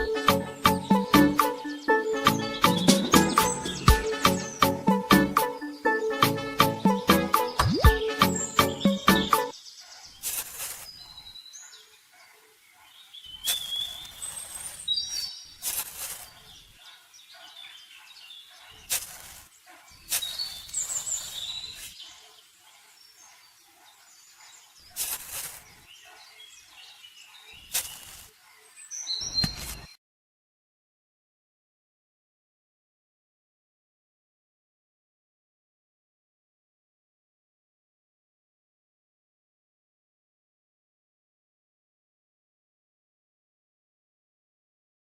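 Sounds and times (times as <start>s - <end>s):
small birds chirping: 0.0s - 30.0s
rustling noise: 9.9s - 11.3s, 13.4s - 16.8s, 18.7s - 22.1s, 24.8s - 25.9s, 27.6s - 28.5s, 29.3s - 30.0s.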